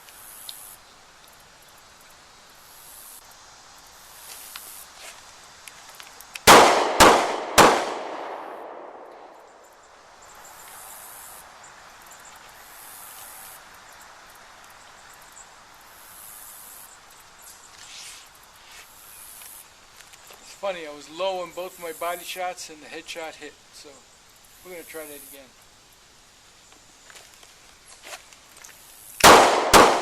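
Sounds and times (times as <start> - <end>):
rustling of person moving: 3.8 - 6.4, 17.0 - 21.7, 26.5 - 29.1
pistol shots with echo: 6.5 - 9.5, 29.2 - 30.0.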